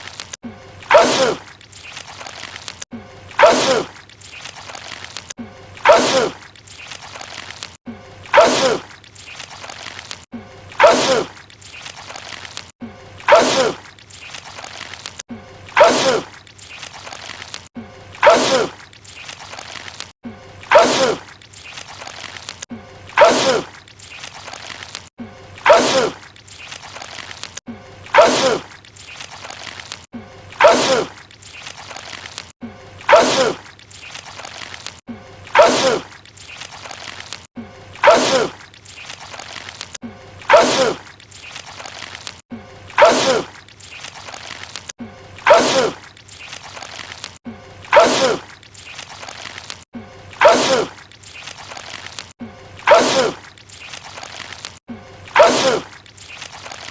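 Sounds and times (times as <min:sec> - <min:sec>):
man sneezing: 0:47.9 - 0:48.4, 0:52.9 - 0:53.4, 0:55.4 - 0:55.9.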